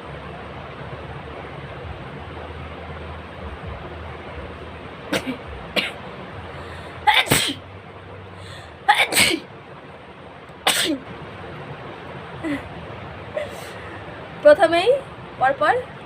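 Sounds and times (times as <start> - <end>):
person sneezing: 7.0 - 7.6, 8.9 - 9.5.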